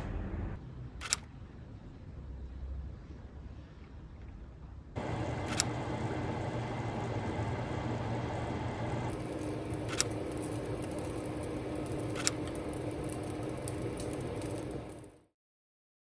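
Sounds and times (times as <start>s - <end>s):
sharp clicks: 1.0s - 1.3s, 9.2s - 15.1s
steady rain: 7.3s - 15.2s.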